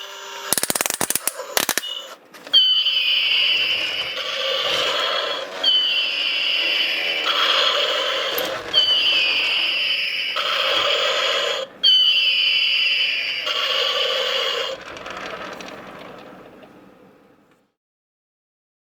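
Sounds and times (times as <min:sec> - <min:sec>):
toy electronic sound effect: 0:00.0 - 0:14.8.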